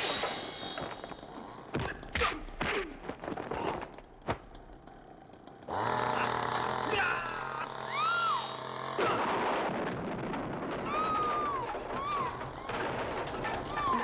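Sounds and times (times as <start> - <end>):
steady motor drone: 3.8 - 9.4.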